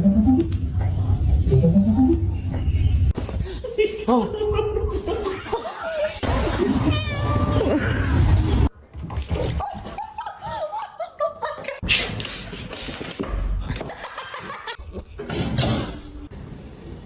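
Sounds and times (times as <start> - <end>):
people laughing: 3.6 - 8.2, 9.7 - 11.8, 13.6 - 15.0.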